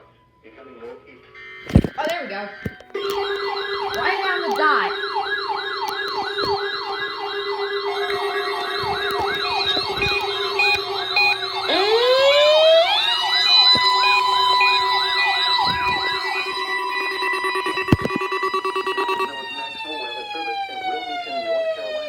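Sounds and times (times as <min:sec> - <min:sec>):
electronic siren wailing: 0:01.7 - 0:22.0
steady hum: 0:02.7 - 0:19.7
siren winding up to high tone: 0:02.7 - 0:22.0.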